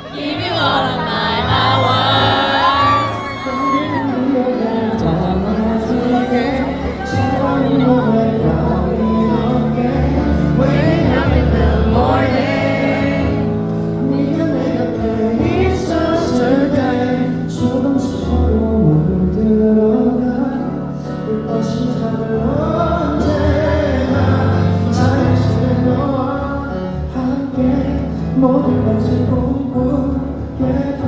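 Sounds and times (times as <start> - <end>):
person singing: 0.0 - 20.7.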